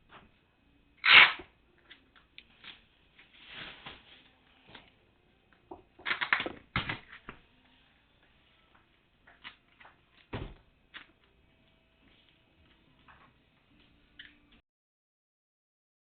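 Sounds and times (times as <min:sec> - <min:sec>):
thump: 0:10.3 - 0:10.6.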